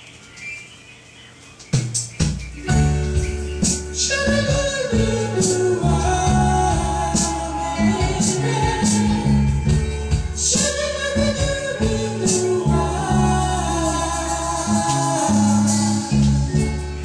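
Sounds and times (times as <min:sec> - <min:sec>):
drums with cymbals: 0:01.7 - 0:05.7, 0:06.3 - 0:10.8, 0:11.4 - 0:12.6
bass line: 0:01.9 - 0:17.0
wordless vocal harmonies: 0:02.7 - 0:17.0.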